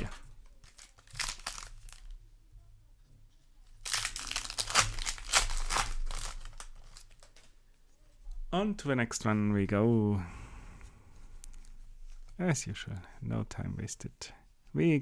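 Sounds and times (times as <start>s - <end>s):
foil wrapper crinkling and tearing: 0.0s - 2.2s, 3.8s - 7.5s.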